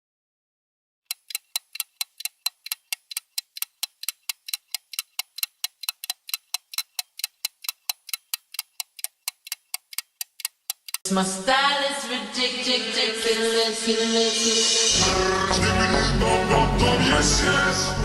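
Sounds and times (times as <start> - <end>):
rapid clock-like ticking: 1.1 - 11.0.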